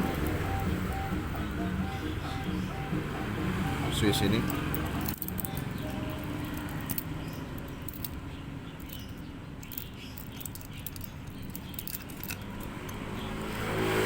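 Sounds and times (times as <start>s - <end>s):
tools clicking on a watch: 4.4s - 8.2s, 8.8s - 13.7s.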